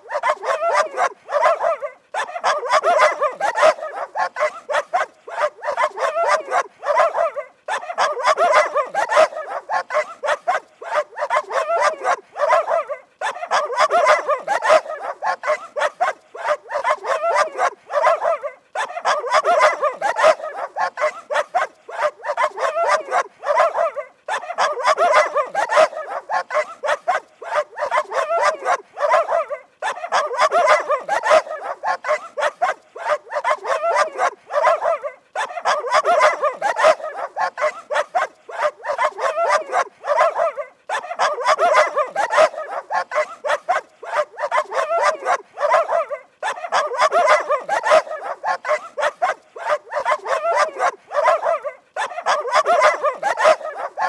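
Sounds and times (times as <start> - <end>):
dog barking: 0.0 - 54.0.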